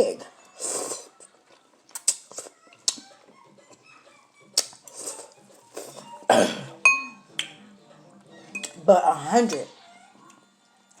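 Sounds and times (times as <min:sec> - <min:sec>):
noodle slurping: 0:04.6 - 0:06.1
person coughing: 0:06.3 - 0:06.8
utensil clinking against bowl: 0:06.9 - 0:07.2.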